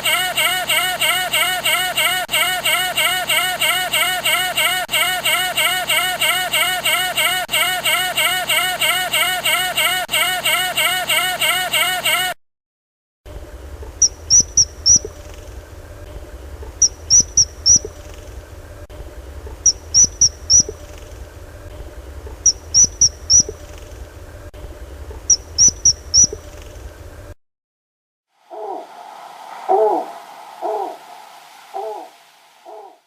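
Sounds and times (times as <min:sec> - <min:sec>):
steady low hum: 0:13.3 - 0:27.4, 0:28.3 - 0:33.0
animal high-pitched chirps: 0:14.0 - 0:15.3, 0:16.8 - 0:18.2, 0:19.6 - 0:21.0, 0:22.4 - 0:23.8, 0:25.3 - 0:26.6, 0:29.7 - 0:31.0, 0:31.7 - 0:33.0.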